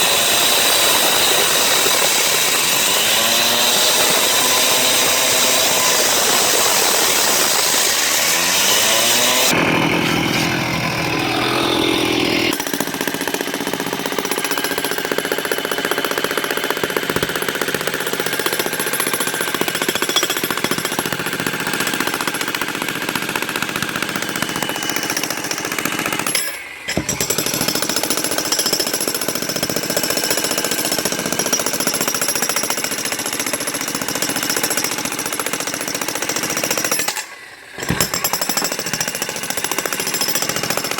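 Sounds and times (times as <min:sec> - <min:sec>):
jackhammer breaking concrete: 0:00.0 - 0:40.9.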